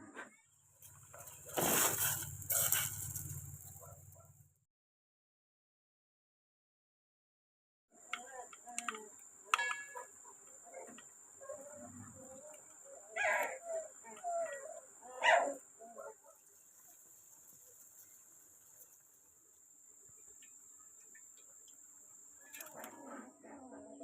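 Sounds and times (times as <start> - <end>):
animal crying: 13.0 - 16.2.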